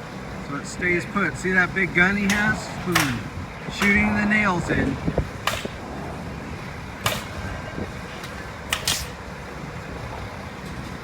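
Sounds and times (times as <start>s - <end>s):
steady low rumble: 0.0s - 11.0s
nail gun firing: 2.3s - 4.0s, 5.5s - 5.8s, 7.0s - 7.4s, 8.7s - 9.2s.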